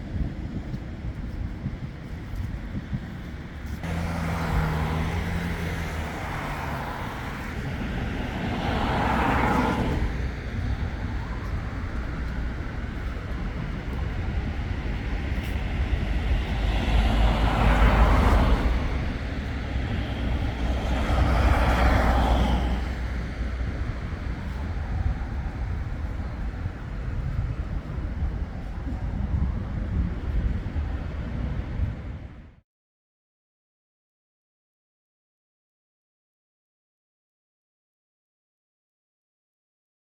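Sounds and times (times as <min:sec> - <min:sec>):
rumble of traffic engines: 0:00.0 - 0:32.6
vehicles driving past: 0:03.6 - 0:32.6.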